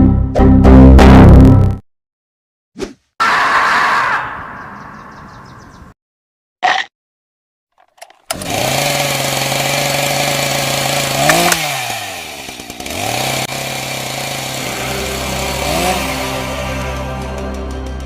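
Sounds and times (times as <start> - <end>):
chainsaw revving: 8.2 - 17.7.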